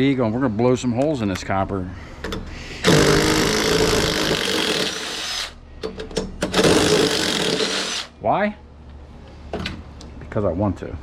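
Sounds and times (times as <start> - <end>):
power drill running: 2.8 - 5.6, 6.5 - 8.1.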